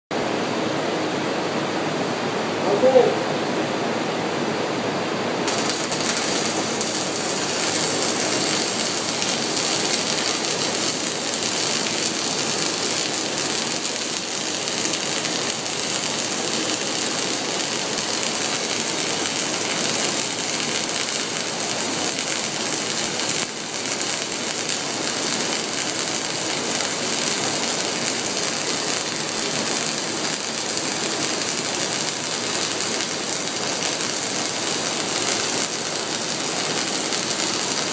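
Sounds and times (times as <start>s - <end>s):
arc welding sizzle: 5.4s - 37.9s.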